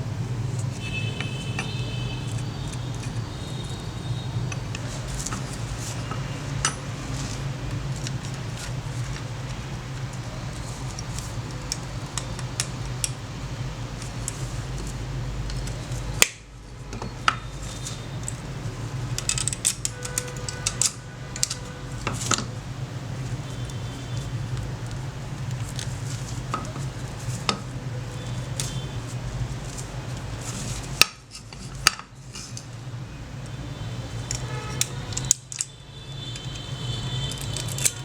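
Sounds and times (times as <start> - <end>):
metal tools clinking and scraping: 1.3 - 8.7.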